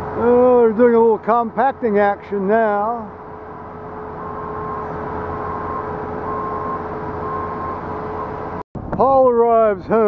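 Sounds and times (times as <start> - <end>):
heavy machine engine running: 0.0 - 8.6
reversing alarm beeps: 4.2 - 8.4.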